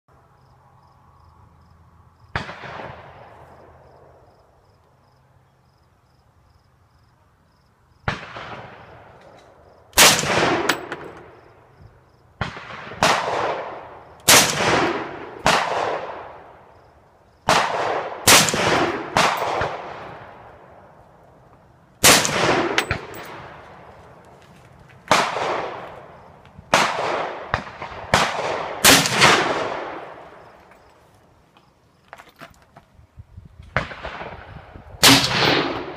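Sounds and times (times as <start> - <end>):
gunshots with long echo: 2.3 - 4.2, 8.0 - 11.6, 12.4 - 16.8, 17.4 - 21.0, 22.0 - 23.9, 25.1 - 30.6, 33.8 - 35.9.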